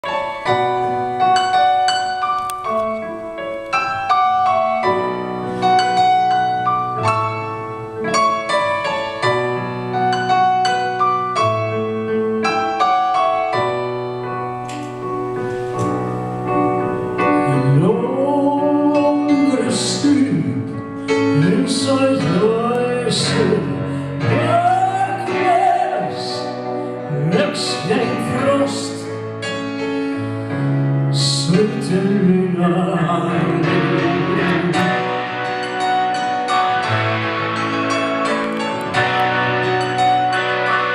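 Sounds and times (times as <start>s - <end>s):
piano playing: 0.0s - 40.9s
woman singing: 31.2s - 35.0s.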